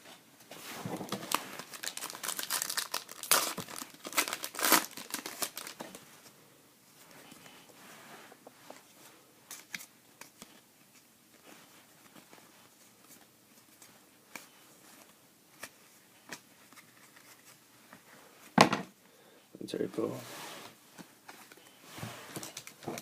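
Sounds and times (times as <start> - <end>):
cards rustling: 0.9 - 6.3, 9.5 - 18.0, 21.0 - 23.0.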